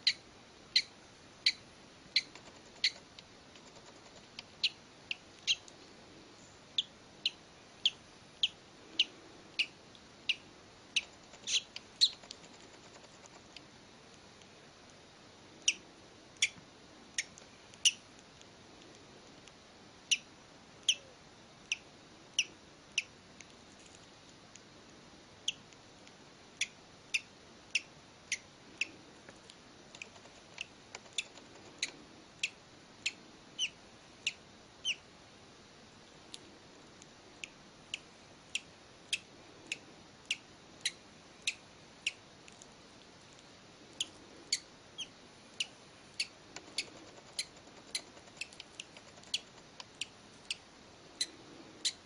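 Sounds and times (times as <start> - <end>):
bird chick cheeping: 0.0 - 3.0, 4.6 - 5.6, 6.8 - 12.3, 30.5 - 35.0.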